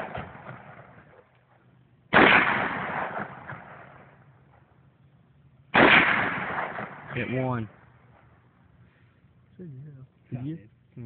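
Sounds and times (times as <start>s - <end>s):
rifle shots: 0.0s - 1.1s, 2.1s - 4.7s, 5.7s - 8.3s
gunshot echo: 0.0s - 1.2s, 2.1s - 4.2s, 5.7s - 7.8s.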